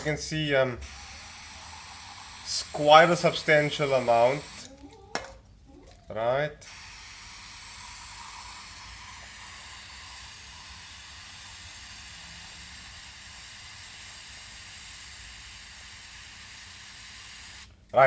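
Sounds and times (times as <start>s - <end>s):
aerosol spray hissing: 0.8s - 4.7s, 6.6s - 17.7s.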